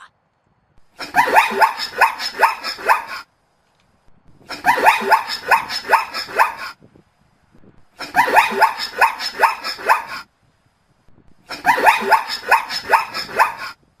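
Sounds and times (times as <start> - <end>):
zebra barking: 1.0 - 3.3, 4.5 - 6.8, 8.0 - 10.3, 11.5 - 13.8.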